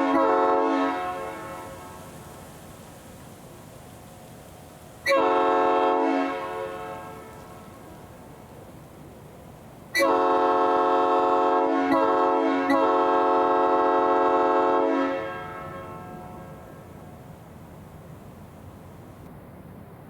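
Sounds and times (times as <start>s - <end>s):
horn echo: 0.0s - 2.0s, 5.1s - 7.6s, 10.0s - 16.7s
train horn blast: 0.0s - 2.1s, 5.0s - 7.7s, 9.9s - 16.8s.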